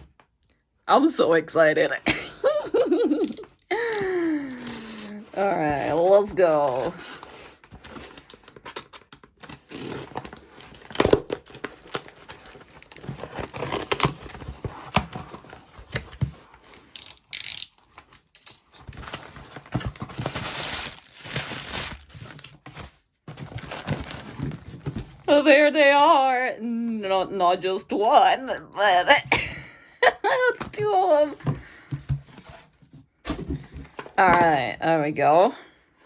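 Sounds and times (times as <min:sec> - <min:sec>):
wrapping rustling and crinkling: 0:02.8 - 0:25.4
cardboard tearing: 0:04.4 - 0:25.3.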